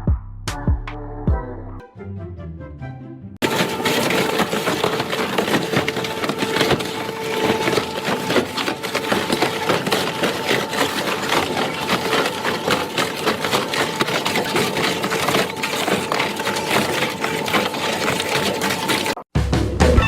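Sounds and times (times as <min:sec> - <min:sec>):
cracking and clattering: 0:03.4 - 0:19.2.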